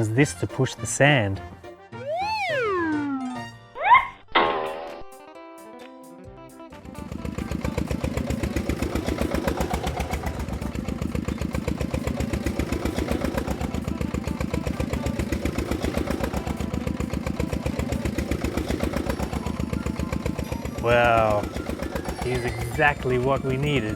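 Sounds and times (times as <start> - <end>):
grader engine putter: 6.8 - 23.9.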